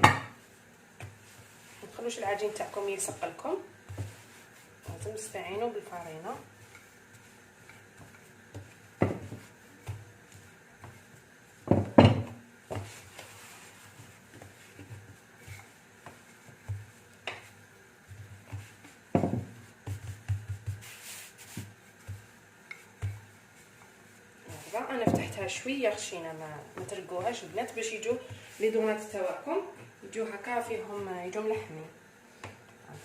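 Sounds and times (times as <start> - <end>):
rolling pin rolling dough: 0.0 - 33.0
rolling pin knocking on counter: 8.6 - 10.0, 11.7 - 12.9, 18.5 - 20.9.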